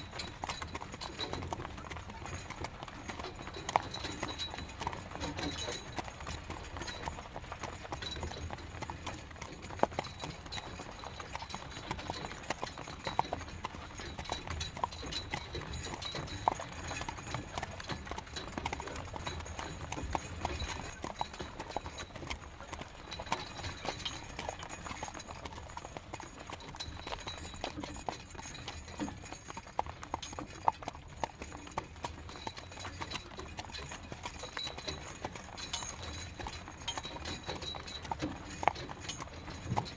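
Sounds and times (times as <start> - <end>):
horse hooves clip-clopping: 0.0 - 39.9.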